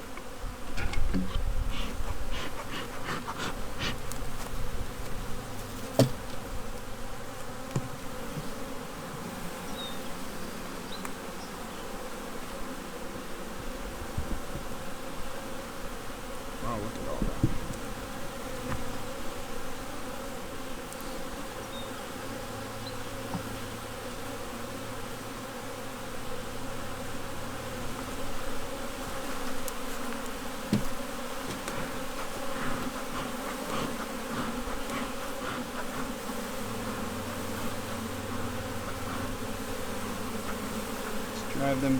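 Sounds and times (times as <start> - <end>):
honey bees buzzing: 0.0 - 41.9.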